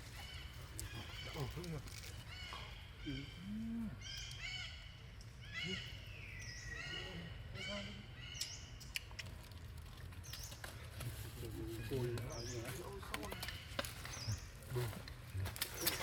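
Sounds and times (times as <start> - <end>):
high-pitched animal calls: 2.3 - 6.1.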